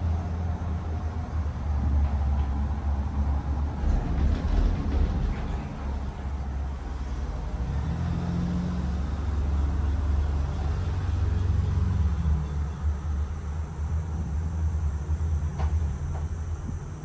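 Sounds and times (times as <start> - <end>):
gondola cabin rumbling: 0.0 - 10.9, 13.0 - 17.0
low hum: 12.7 - 17.0.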